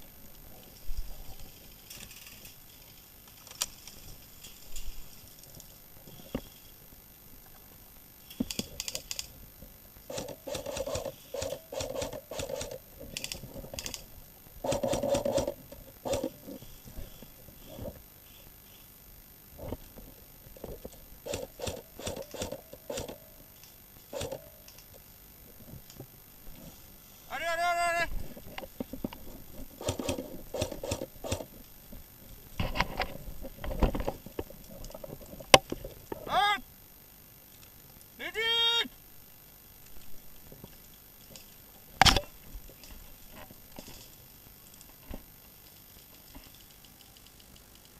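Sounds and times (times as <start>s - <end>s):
airsoft guns firing rapid clicks: 10.1s - 14.0s, 14.6s - 16.4s, 21.3s - 23.2s, 29.8s - 31.5s
person shouting: 27.3s - 28.1s, 36.3s - 36.6s, 38.2s - 38.9s.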